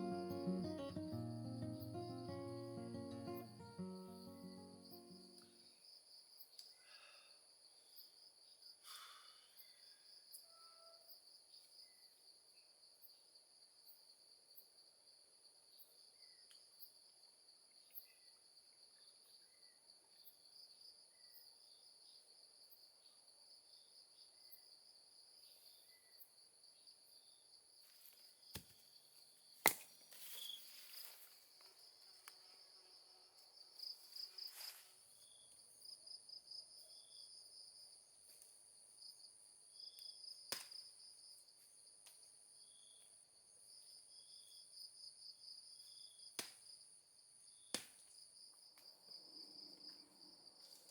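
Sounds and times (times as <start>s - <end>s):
short high chirps: 0.0s - 5.4s.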